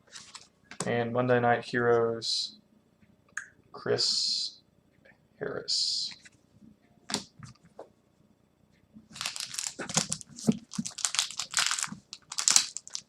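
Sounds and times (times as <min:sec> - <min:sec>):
plastic wrapper crinkling: 0:09.1 - 0:13.0.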